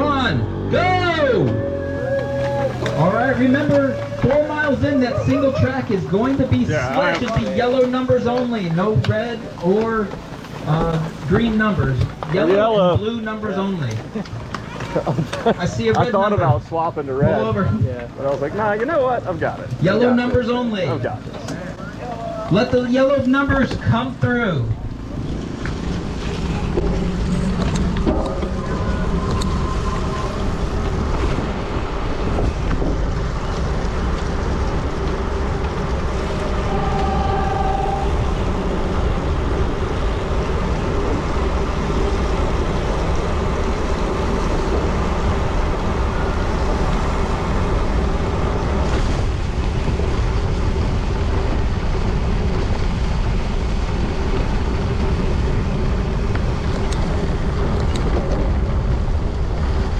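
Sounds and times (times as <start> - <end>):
bicycle tyres rolling on gravel: 1.1 - 59.9
wind rush: 24.7 - 59.9.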